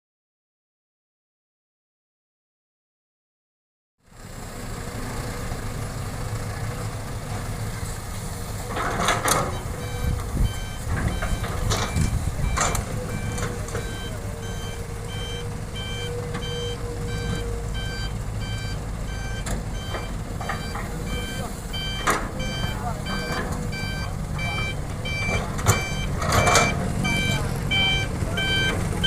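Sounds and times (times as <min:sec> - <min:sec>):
diesel machinery rumbling: 0:04.0 - 0:29.0
back-up alarm beeping: 0:09.0 - 0:29.0.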